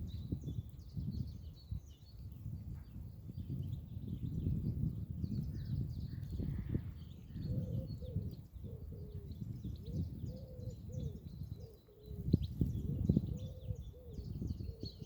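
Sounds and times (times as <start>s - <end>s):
small birds chirping: 0.0s - 15.0s
low cooing call: 7.4s - 12.3s.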